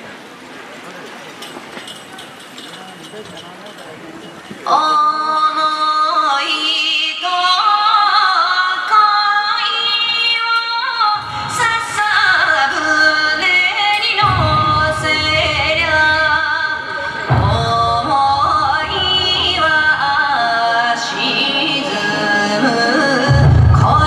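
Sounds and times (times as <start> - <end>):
woman singing dance song: 4.6 - 24.0
deep beat: 14.2 - 16.5, 17.2 - 20.4, 23.3 - 24.0.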